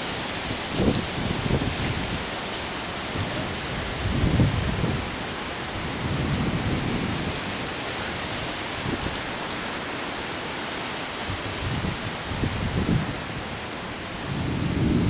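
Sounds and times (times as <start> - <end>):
heavy rain falling: 0.0 - 15.0
thunder rumbling: 3.1 - 9.2, 14.0 - 15.0.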